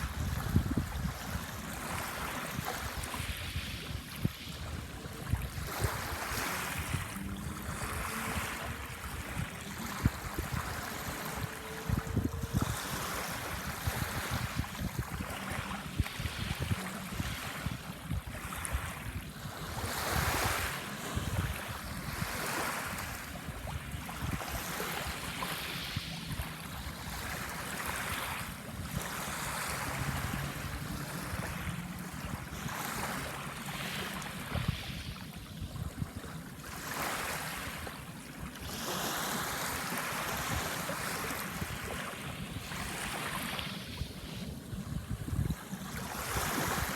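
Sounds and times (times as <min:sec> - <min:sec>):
sea waves breaking: 0:00.0 - 0:46.9.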